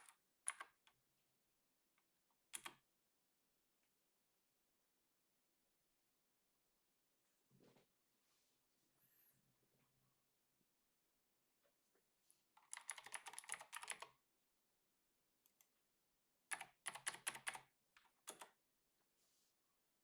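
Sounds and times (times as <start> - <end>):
typing on computer keyboard: 0.0 - 0.9, 2.6 - 2.8, 12.6 - 14.2, 16.5 - 18.6.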